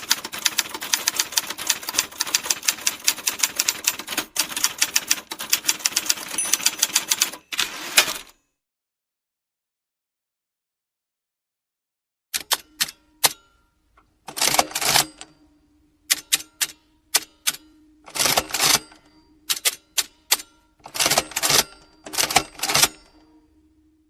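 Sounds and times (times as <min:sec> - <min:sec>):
typewriter keys striking: 0:00.0 - 0:08.3, 0:19.5 - 0:23.0.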